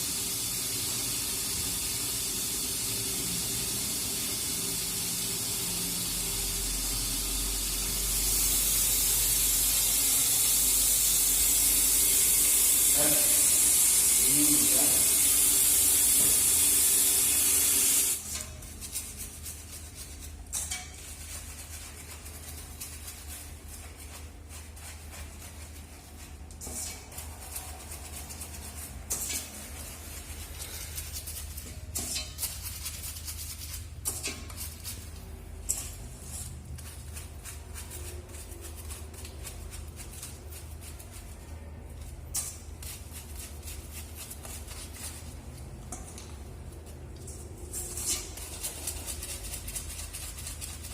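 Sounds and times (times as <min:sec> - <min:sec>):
running water spraying hard: 0:09.8 - 0:18.2.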